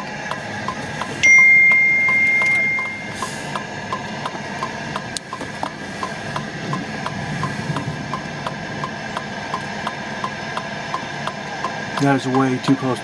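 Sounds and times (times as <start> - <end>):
loud high beep: 1.2 - 3.3.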